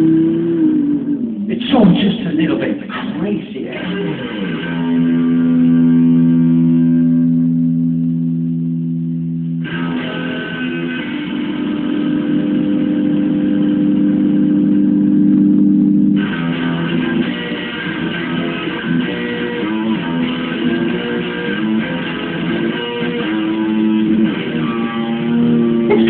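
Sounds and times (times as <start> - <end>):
electric guitar sustained chords: 0.0 - 26.0.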